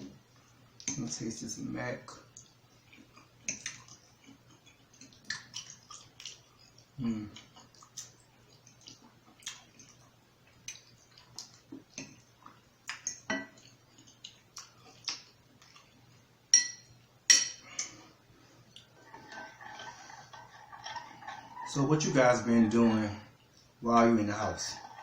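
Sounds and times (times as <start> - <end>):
chewing and mouth clicks: 2.3 - 16.2
utensil clinking on dish: 16.6 - 17.9.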